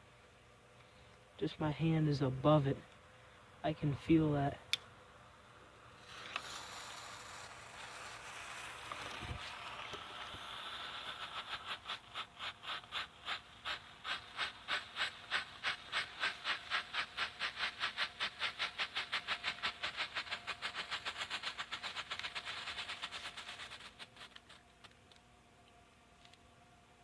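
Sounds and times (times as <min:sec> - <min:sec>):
strobe firework pulsing sputter: 0:05.9 - 0:25.0.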